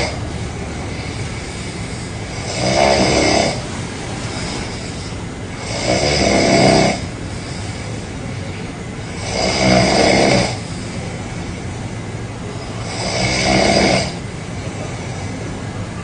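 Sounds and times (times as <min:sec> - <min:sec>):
person snoring loudly: 0:00.0 - 0:00.2, 0:00.9 - 0:03.6, 0:04.3 - 0:07.8, 0:09.1 - 0:10.7, 0:12.8 - 0:14.2
steady low background noise: 0:00.0 - 0:16.0.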